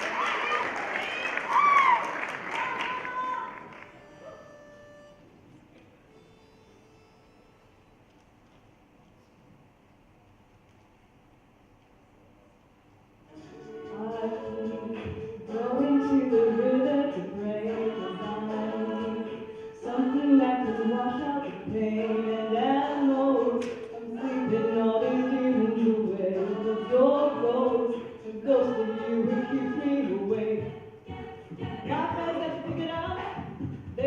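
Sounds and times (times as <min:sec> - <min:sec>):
a cappella group singing in harmony: 0:13.3 - 0:34.0.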